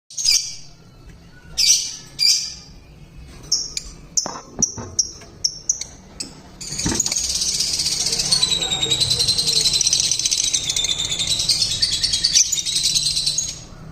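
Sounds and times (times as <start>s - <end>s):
lovebirds calling and chirping: 0.1s - 13.9s
chatter of many birds: 6.6s - 13.9s.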